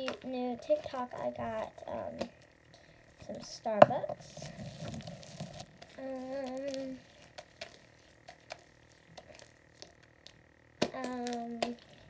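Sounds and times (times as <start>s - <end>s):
person humming: 5.9s - 7.1s.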